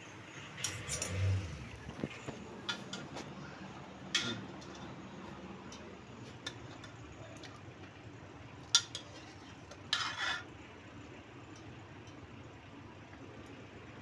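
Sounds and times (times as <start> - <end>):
metal utensils clinking: 0.5 - 3.1.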